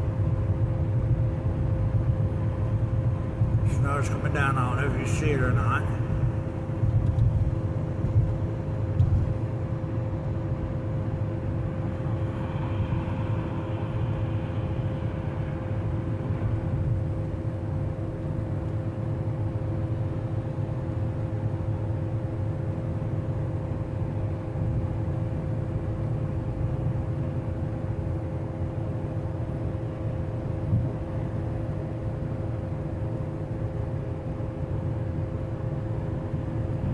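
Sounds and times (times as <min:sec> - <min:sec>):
car road rumble: 0:00.0 - 0:19.6
constant hum: 0:00.0 - 0:36.9.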